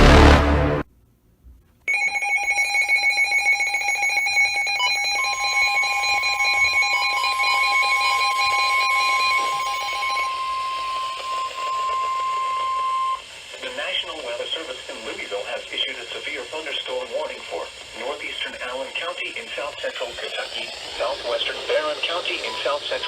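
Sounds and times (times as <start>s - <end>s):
electronic alarm beeping: 1.9s - 13.2s, 19.3s - 23.0s.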